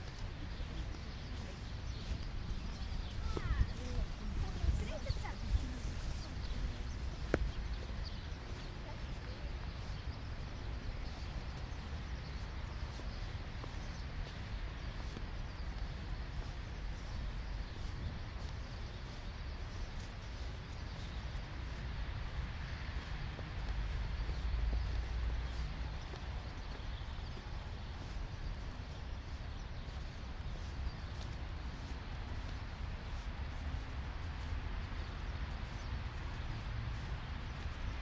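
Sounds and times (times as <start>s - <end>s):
wind buffeting microphone: 0.0s - 21.1s
snowy street ambience: 0.0s - 38.0s.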